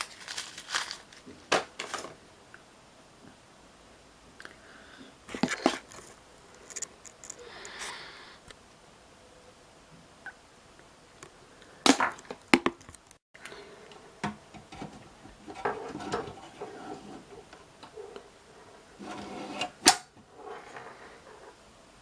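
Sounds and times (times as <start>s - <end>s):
plastic packaging rustling: 0.0s - 2.2s.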